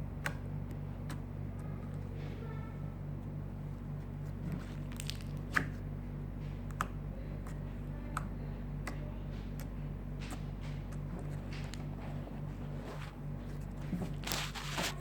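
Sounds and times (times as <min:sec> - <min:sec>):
steady low hum: 0:00.0 - 0:15.0
slime squishing by hand: 0:03.8 - 0:05.8, 0:06.6 - 0:15.0.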